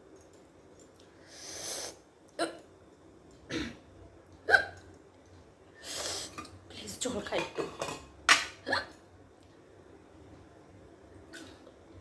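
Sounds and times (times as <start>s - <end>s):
woman hiccuping: 4.5s - 4.8s, 8.6s - 9.0s.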